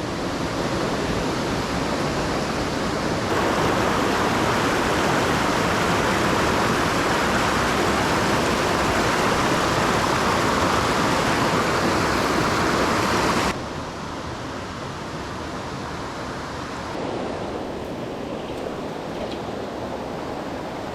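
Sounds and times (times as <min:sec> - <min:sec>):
rushing stream water: 0:03.3 - 0:13.6.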